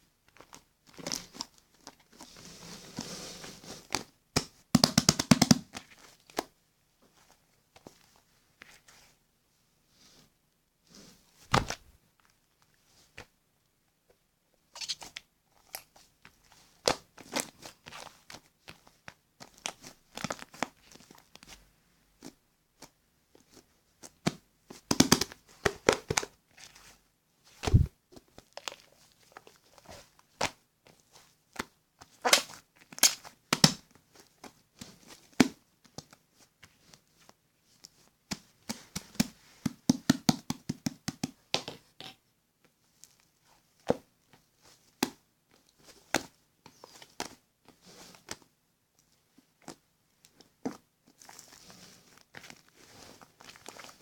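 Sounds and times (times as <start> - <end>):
crinkling and rustling: 0.2 - 4.1, 22.2 - 39.9, 42.7 - 54.0.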